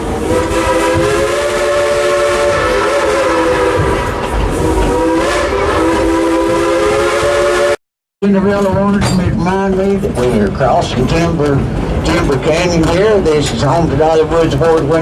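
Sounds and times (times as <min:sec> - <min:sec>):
steam locomotive whistle: 0:00.0 - 0:07.8
train rumbling: 0:00.0 - 0:15.0.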